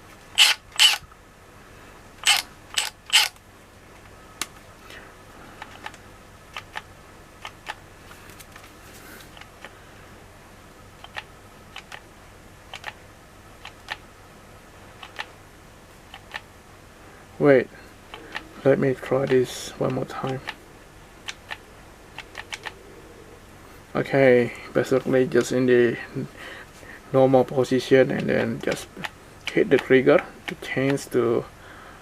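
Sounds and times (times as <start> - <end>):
impact wrench control clicks: 0.4 - 1.0, 2.2 - 3.4.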